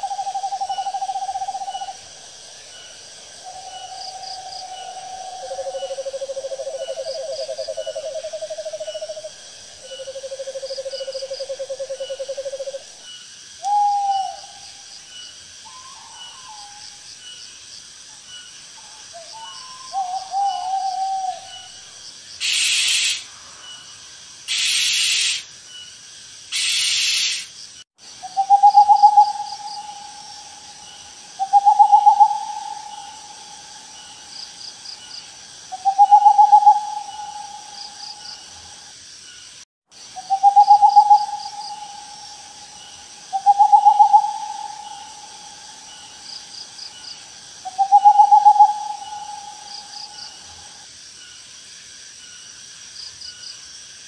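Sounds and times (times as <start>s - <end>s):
owl hooting: 0.0s - 2.0s, 3.4s - 9.3s, 13.6s - 14.6s, 19.2s - 21.7s, 22.4s - 23.3s, 24.5s - 25.4s, 26.5s - 27.5s, 28.2s - 34.3s, 35.7s - 38.2s, 40.2s - 46.2s, 47.6s - 50.4s
harsh hissing bursts: 22.4s - 23.4s, 24.5s - 25.5s, 26.5s - 27.6s.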